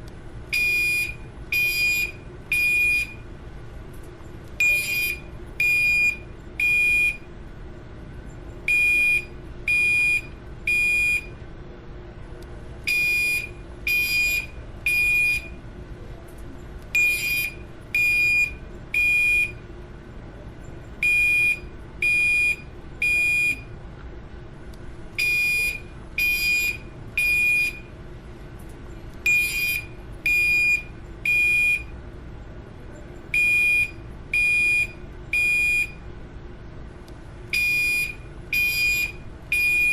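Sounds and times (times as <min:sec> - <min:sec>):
fire alarm beeping: 0:00.5 - 0:03.3, 0:04.6 - 0:07.3, 0:08.6 - 0:11.4, 0:12.9 - 0:15.6, 0:16.9 - 0:19.6, 0:21.0 - 0:23.7, 0:25.2 - 0:27.9, 0:29.2 - 0:32.0, 0:33.3 - 0:36.0, 0:37.5 - 0:39.9.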